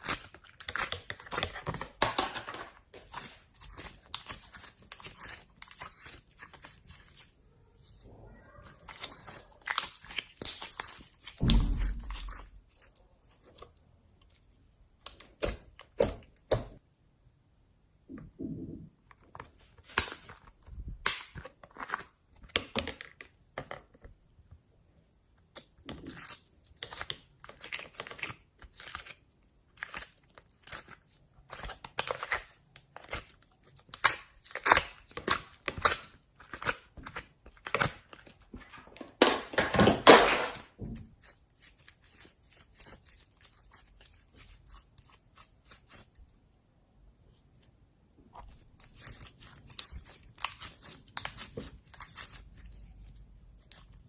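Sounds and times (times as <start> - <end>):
slime crackling and tearing: 0.0 - 2.0, 2.9 - 8.0, 8.7 - 13.8, 25.4 - 38.5, 48.4 - 54.0.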